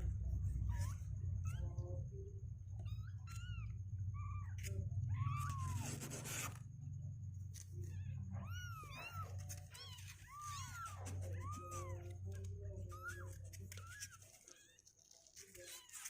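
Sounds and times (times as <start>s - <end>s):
steady low hum: 0.0s - 14.8s
kittens mewing: 2.7s - 6.6s, 7.6s - 16.0s.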